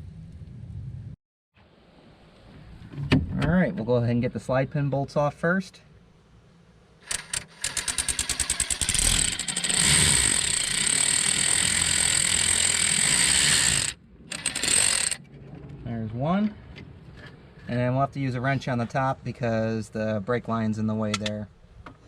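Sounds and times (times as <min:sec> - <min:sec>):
power tool clicking: 0:07.0 - 0:15.2
power tool whirring: 0:07.0 - 0:15.2.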